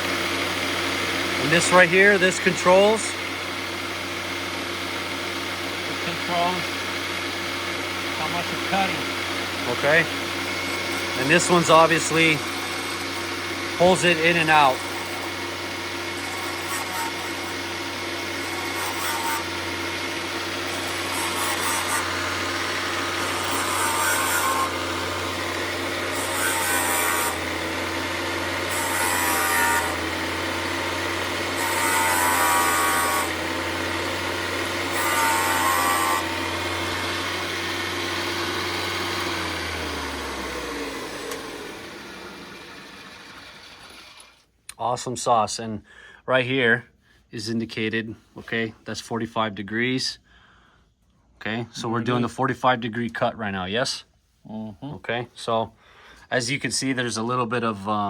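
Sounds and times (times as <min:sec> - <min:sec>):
grinding stone rasping: 0:00.0 - 0:44.4
motor humming: 0:00.0 - 0:44.5.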